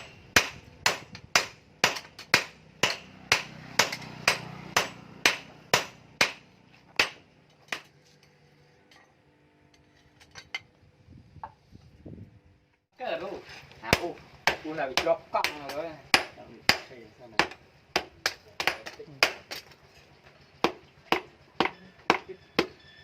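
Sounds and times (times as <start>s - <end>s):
hammer striking steel: 0.0s - 7.9s, 13.9s - 19.6s, 20.6s - 22.8s.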